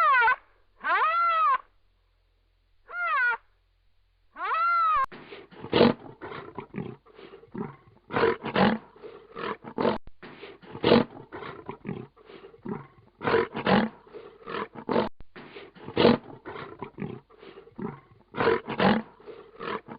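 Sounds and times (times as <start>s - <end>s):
lion roaring: 5.5s - 10.0s, 10.6s - 15.1s, 15.8s - 19.9s.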